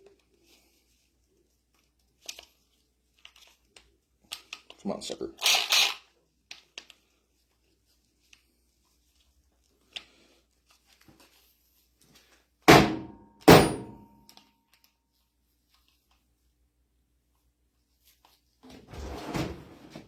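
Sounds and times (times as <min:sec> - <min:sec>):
loud metallic knocks with ringing: 0:12.7 - 0:14.1.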